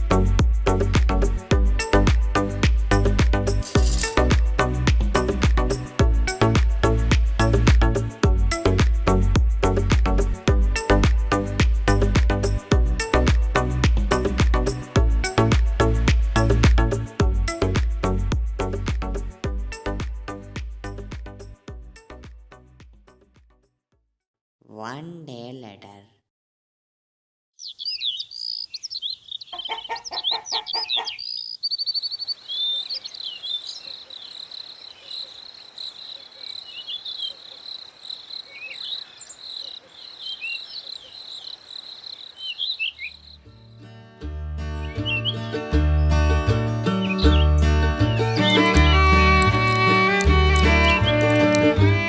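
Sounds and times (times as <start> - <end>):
high insect trill: 0.0 - 8.7, 48.4 - 52.0
background music with steady beat: 0.0 - 23.5, 48.0 - 52.0
birds chirping: 27.6 - 43.4, 48.4 - 52.0
rapid repeated bird calls: 27.6 - 43.4.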